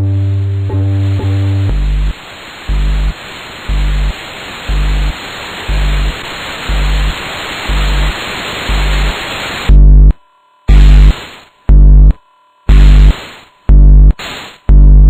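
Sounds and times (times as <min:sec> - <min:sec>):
steady hiss: 0:00.0 - 0:09.7, 0:10.7 - 0:11.6, 0:12.7 - 0:13.6, 0:14.2 - 0:14.7.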